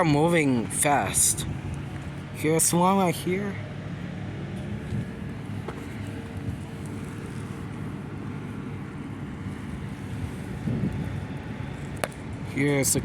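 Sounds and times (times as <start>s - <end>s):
distant heavy machinery engines: 0.0s - 13.0s
wind buffeting microphone: 0.0s - 13.0s.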